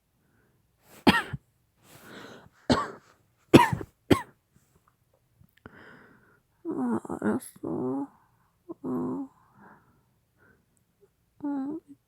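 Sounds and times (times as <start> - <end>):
woman coughing hard: 1.0 - 1.4, 2.7 - 4.3.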